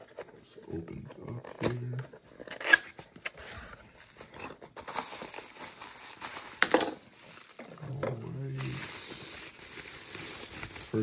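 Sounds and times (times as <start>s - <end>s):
packaging crinkling and rustling: 0.0s - 11.0s.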